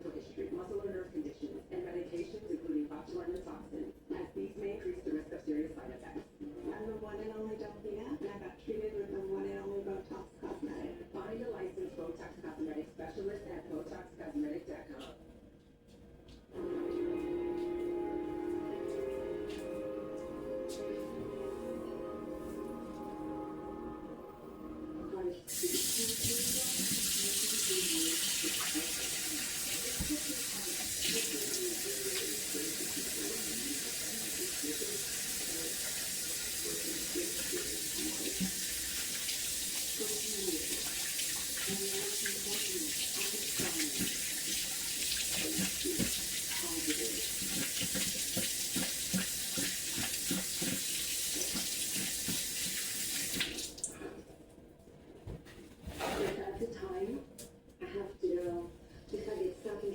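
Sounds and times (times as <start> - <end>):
running water rushing: 25.5 - 53.8.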